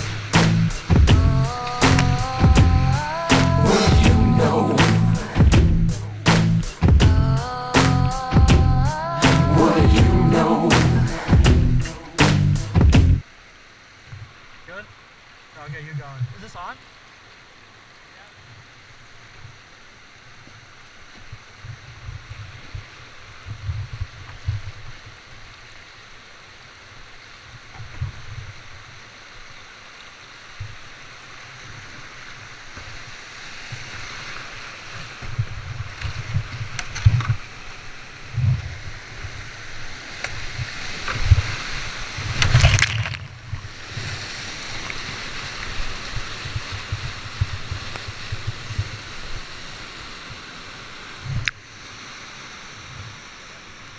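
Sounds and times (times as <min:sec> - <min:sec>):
rushing whitewater: 0:00.0 - 0:53.9
thumps on microphone: 0:00.4 - 0:07.3, 0:10.8 - 0:13.2.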